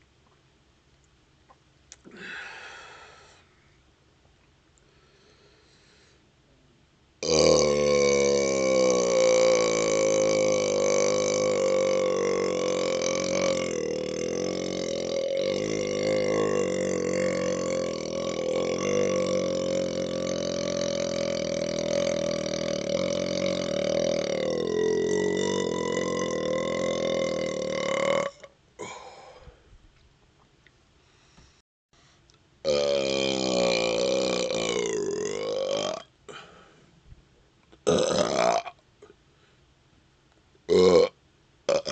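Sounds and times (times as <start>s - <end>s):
man belching: 7.2s - 29.2s, 32.6s - 36.1s, 37.8s - 38.8s, 40.7s - 41.9s.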